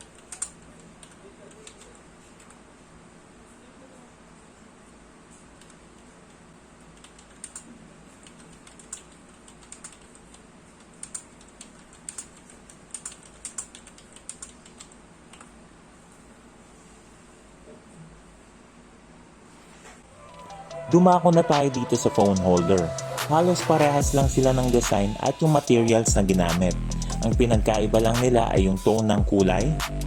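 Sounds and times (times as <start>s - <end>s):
keyboard typing clicks: 0.0s - 2.6s, 7.0s - 10.2s, 10.8s - 15.5s.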